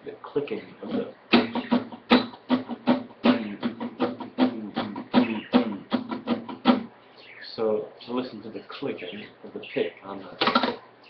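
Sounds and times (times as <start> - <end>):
guitar strummed with a pick: 0.9 - 6.9.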